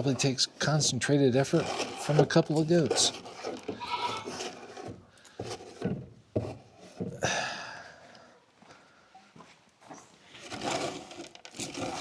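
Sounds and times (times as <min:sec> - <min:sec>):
scraping feed bowl: 0:00.0 - 0:05.9, 0:10.4 - 0:12.0.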